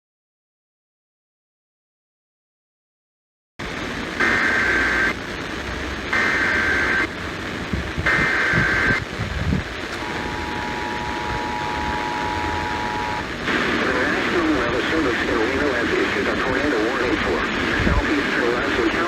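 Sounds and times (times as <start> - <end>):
radio static hiss: 3.6 - 19.0
screeching data tones: 4.2 - 5.2, 6.1 - 7.1, 8.0 - 9.0, 9.9 - 13.3
two-tone attention signal: 8.1 - 9.0, 10.0 - 13.3.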